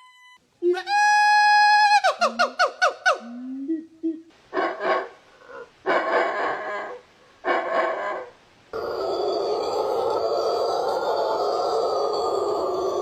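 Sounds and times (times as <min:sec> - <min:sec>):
monkey calling: 0:00.6 - 0:03.4.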